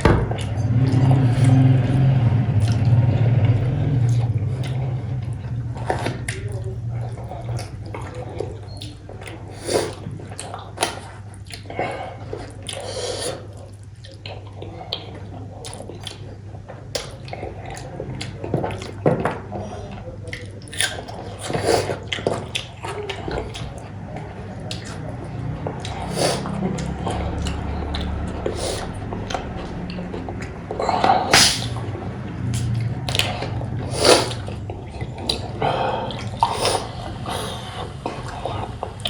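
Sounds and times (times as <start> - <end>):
steady low hum: 0.0 - 39.0
wet chewing and smacking: 0.0 - 39.0.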